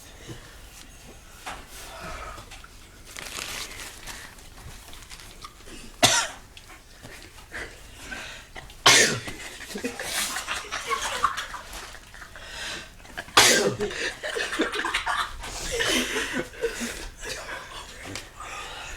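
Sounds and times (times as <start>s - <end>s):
breathy coughs and throat-clearing: 5.7s - 6.5s, 8.6s - 10.2s, 13.1s - 14.7s
person coughing sharply: 6.0s - 6.4s, 8.8s - 9.4s, 13.3s - 14.2s.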